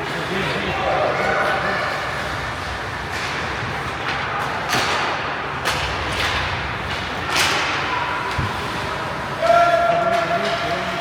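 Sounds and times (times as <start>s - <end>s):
hockey sticks and puck clacking: 3.1s - 8.4s, 9.8s - 11.0s.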